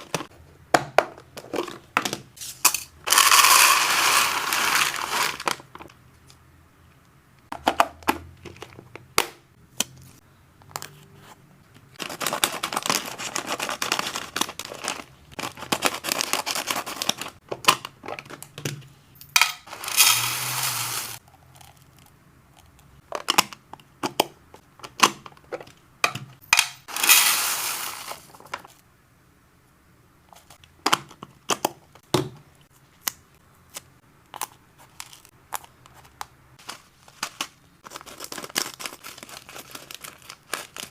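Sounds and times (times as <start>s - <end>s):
plastic bags crinkling: 3.1s - 5.9s, 12.0s - 17.4s, 36.6s - 40.9s.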